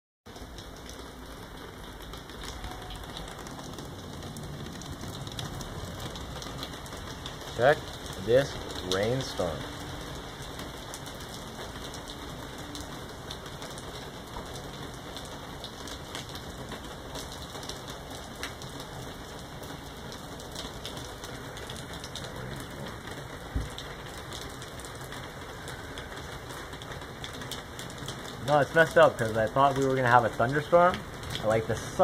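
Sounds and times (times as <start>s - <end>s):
raindrops ticking on surfaces: 0.3s - 32.0s
steady rain falling: 0.3s - 32.0s.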